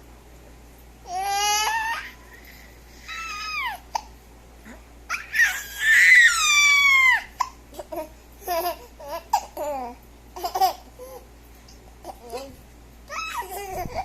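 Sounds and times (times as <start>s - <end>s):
baby squealing: 3.1s - 3.8s, 5.1s - 7.4s, 13.1s - 14.0s
baby giggling and babbling: 7.4s - 11.3s, 12.0s - 14.0s.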